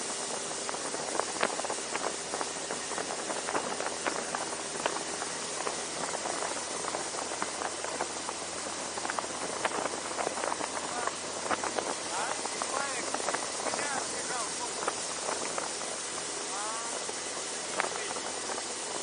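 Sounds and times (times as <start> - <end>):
outboard motor hum: 0.0 - 19.0
rushing hiss of water and wind: 0.0 - 19.0.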